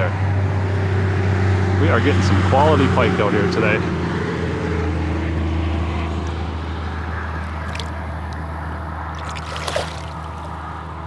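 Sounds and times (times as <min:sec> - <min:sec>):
highway traffic rumble: 0:00.0 - 0:11.0
water splashing beside kayak: 0:07.4 - 0:08.4, 0:09.0 - 0:10.6.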